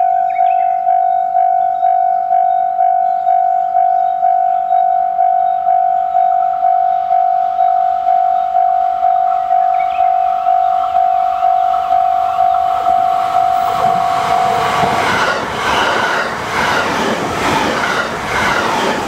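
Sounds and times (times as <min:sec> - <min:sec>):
level crossing warning bell: 0:00.0 - 0:15.0
faint train noise: 0:00.0 - 0:19.0.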